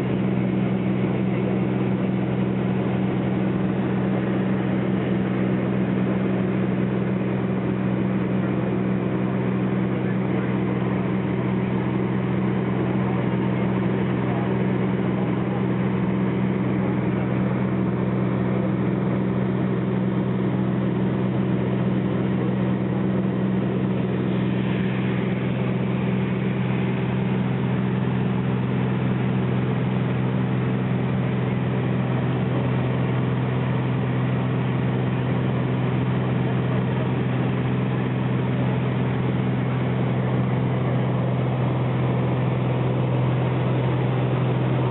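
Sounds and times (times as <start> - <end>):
engine droning: 0.0 - 44.9.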